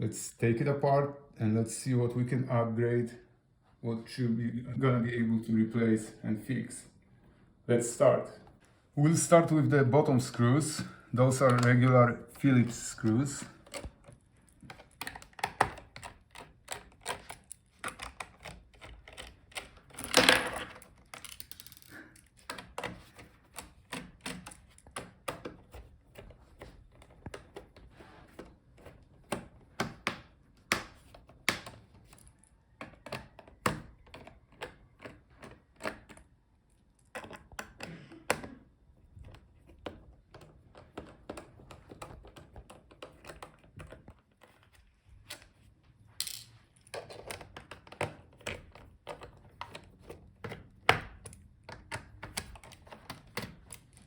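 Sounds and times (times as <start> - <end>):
screwdriver scraping plastic: 10.2 - 20.0, 20.8 - 38.5, 39.1 - 45.5, 46.9 - 54.0.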